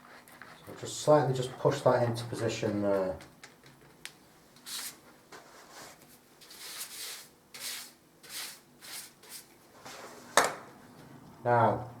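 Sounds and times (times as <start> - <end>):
wallpaper rubbing strokes: 4.6 - 10.4.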